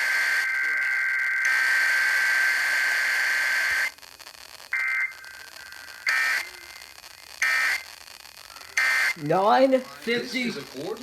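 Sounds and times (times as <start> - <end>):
radio hiss: 0.0 - 11.0
harsh two-pitch data screech: 4.7 - 11.0.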